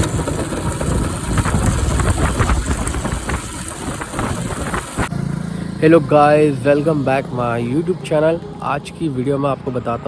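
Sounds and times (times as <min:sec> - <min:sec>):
motorcycle engine rumbling: 0:00.0 - 0:10.0.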